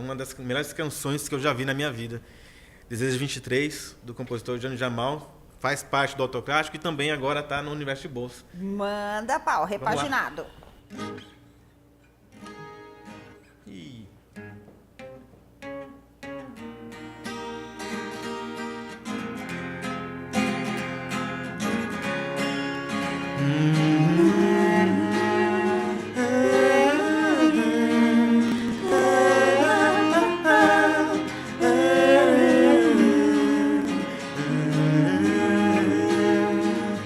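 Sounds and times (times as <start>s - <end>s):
acoustic guitar strumming: 9.9s - 13.6s, 14.2s - 37.0s
wordless gliding vocal: 23.4s - 37.0s.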